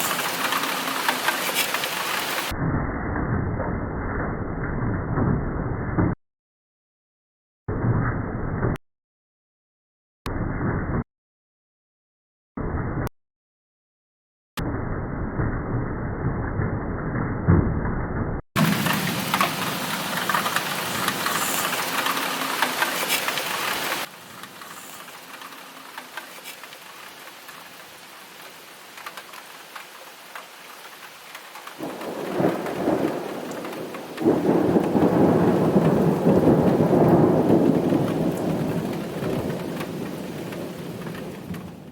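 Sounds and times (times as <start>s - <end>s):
heavy rain: 0.0s - 2.6s, 18.6s - 41.9s
thunder rumbling: 0.0s - 6.1s, 18.6s - 26.1s, 31.8s - 41.9s.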